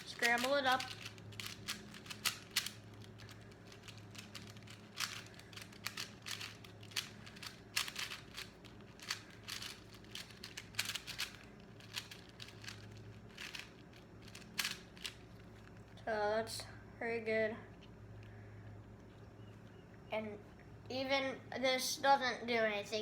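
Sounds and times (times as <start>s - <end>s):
puzzle cube clicking: 0.0s - 15.2s.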